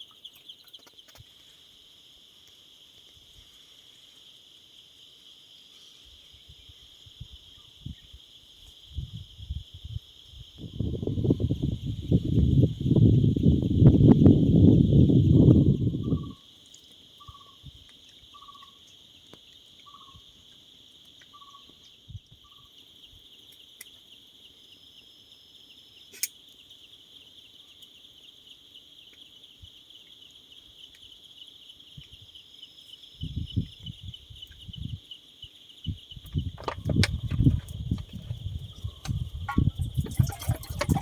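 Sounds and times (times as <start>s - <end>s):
insects trilling: 0.0s - 41.0s.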